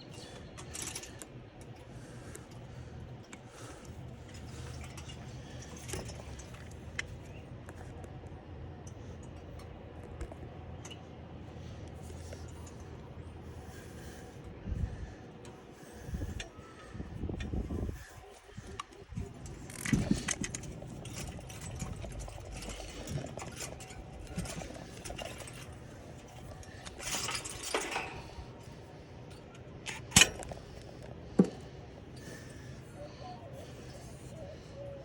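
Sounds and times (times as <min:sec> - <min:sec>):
parts and tools handled: 0:00.2 - 0:01.8, 0:17.4 - 0:32.8.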